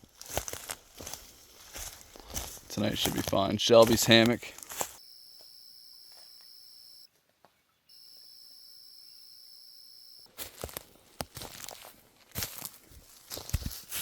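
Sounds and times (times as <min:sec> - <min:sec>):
insects trilling: 0:04.9 - 0:07.1, 0:07.9 - 0:10.3.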